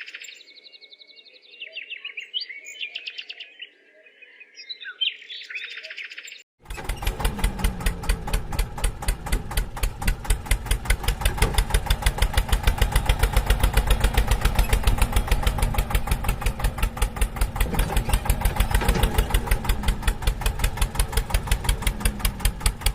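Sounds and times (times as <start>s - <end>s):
engine running steadily: 6.6s - 22.9s.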